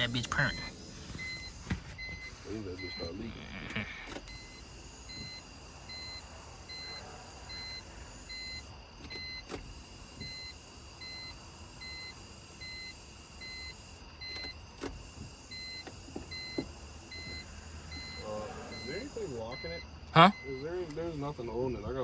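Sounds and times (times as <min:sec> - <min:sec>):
car warning beeps: 0:00.0 - 0:22.0.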